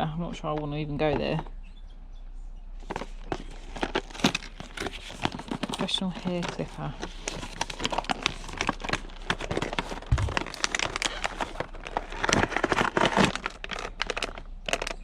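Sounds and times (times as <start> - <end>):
packaging crinkling and rustling: 2.8 - 15.0
low thump: 10.1 - 10.5.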